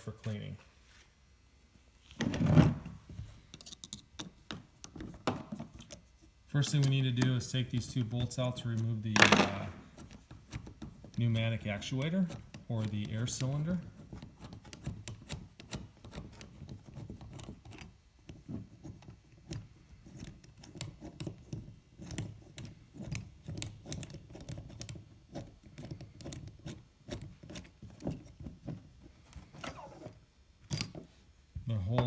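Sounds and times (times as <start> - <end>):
low handling noise: 6.6 - 10.0.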